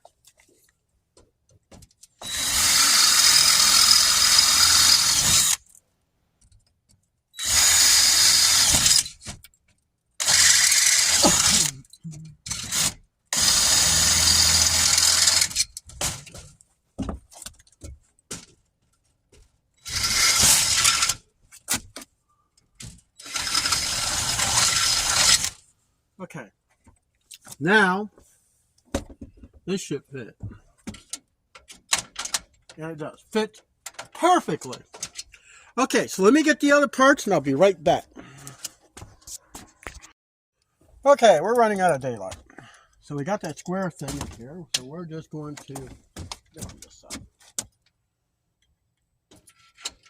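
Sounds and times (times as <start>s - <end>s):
power drill boring: 2.2s - 5.6s, 7.4s - 9.2s, 10.2s - 11.7s, 12.5s - 15.6s, 19.8s - 21.2s, 23.2s - 25.6s.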